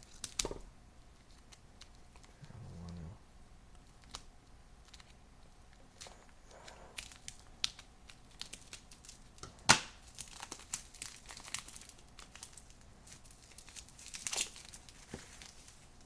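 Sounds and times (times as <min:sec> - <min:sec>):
plastic packaging snapping: 0:07.0 - 0:15.6
plastic packaging crinkling: 0:07.0 - 0:16.0.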